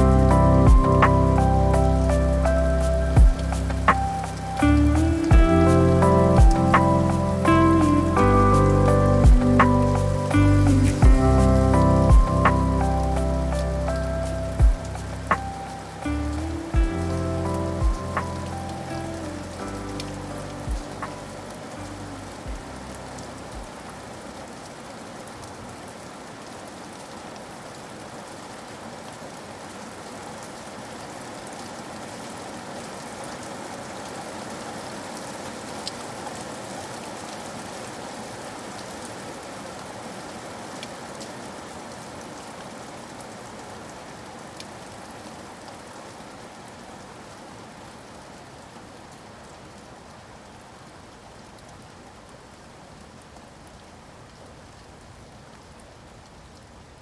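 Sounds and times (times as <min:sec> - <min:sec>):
raindrops ticking: 0:00.0 - 0:24.7
steady rain: 0:00.0 - 0:57.0.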